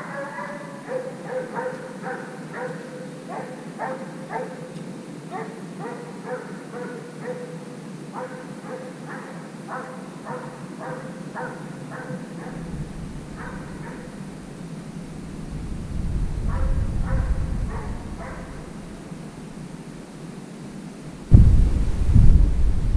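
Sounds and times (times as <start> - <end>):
hound baying: 0.0 - 4.7, 5.3 - 7.6, 8.2 - 12.7, 13.3 - 14.2, 16.5 - 18.8.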